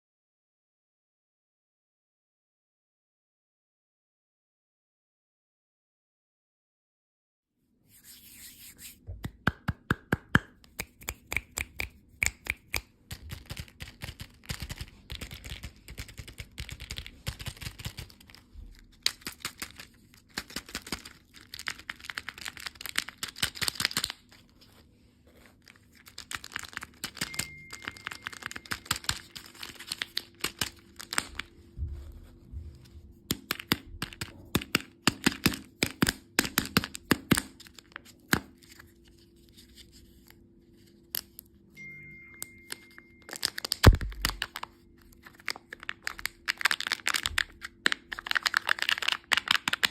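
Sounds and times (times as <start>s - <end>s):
candy wrapper crinkling: 11.0s - 24.7s, 25.4s - 31.6s, 42.7s - 49.9s.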